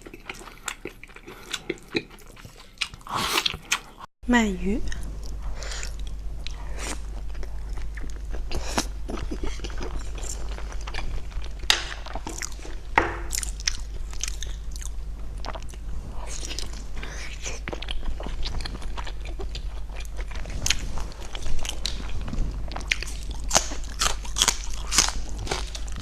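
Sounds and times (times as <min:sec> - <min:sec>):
person chewing and biting: 0:00.0 - 0:04.0, 0:05.2 - 0:26.0
steady low hum: 0:00.0 - 0:26.0.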